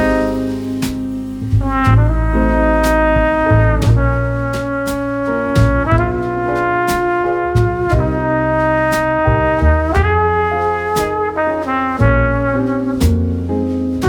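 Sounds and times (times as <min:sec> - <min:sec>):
sharp percussion hits: 0:00.0 - 0:02.2
bass line: 0:00.0 - 0:14.0.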